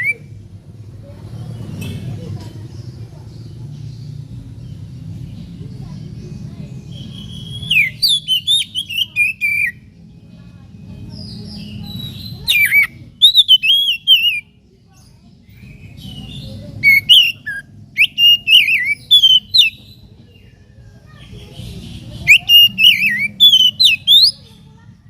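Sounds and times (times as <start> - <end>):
bird singing whistled phrases: 0.0 - 0.4, 6.9 - 9.8, 11.2 - 14.5, 15.8 - 20.0, 22.2 - 24.4.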